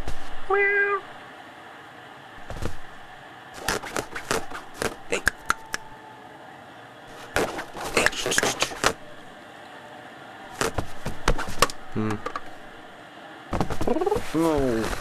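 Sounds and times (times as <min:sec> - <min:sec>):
light knocks and scuffs: 0:02.4 - 0:05.1, 0:07.1 - 0:09.2, 0:10.6 - 0:12.7, 0:13.5 - 0:15.0.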